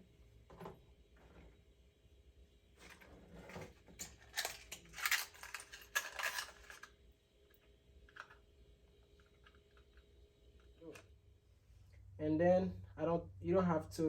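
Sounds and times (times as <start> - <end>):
small hard parts clicking: 4.0 - 6.9.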